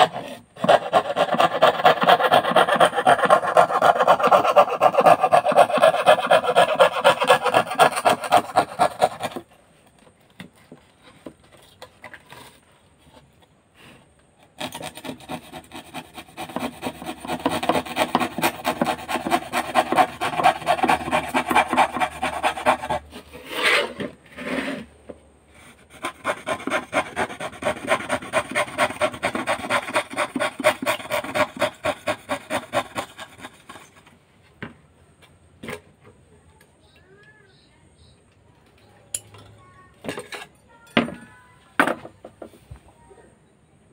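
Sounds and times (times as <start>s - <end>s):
saw rasping through plywood: 0.0s - 9.5s, 14.5s - 24.9s, 25.6s - 34.1s.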